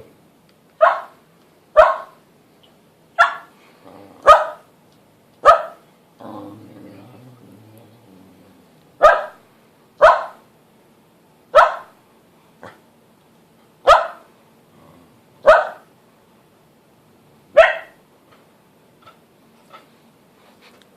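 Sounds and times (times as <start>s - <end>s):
dog barking: 0.8s - 1.2s, 1.8s - 2.2s, 3.2s - 3.5s, 4.2s - 4.7s, 5.4s - 5.8s, 9.0s - 9.4s, 10.0s - 10.5s, 11.5s - 12.0s, 13.8s - 14.3s, 15.4s - 15.9s, 17.5s - 18.0s.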